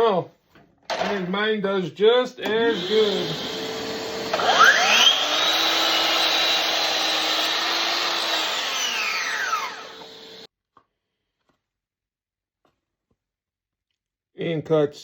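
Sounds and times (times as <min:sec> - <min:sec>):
miter saw motor whining: 0:02.5 - 0:10.5.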